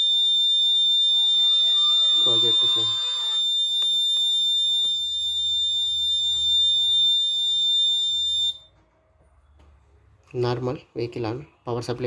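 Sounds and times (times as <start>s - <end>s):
piezo buzzer high tone: 0.0s - 8.7s.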